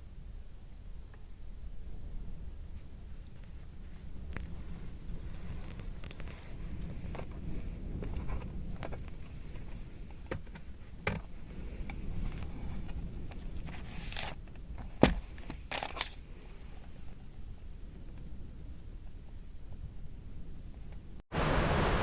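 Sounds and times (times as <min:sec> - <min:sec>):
handling clicks and rustles: 0:02.8 - 0:18.3
low rumble: 0:21.3 - 0:22.0.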